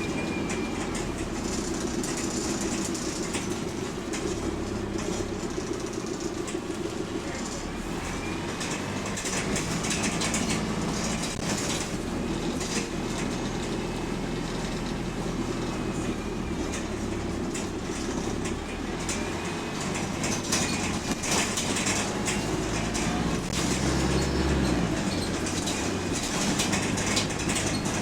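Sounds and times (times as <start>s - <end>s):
bus engine running: 0.0s - 28.0s.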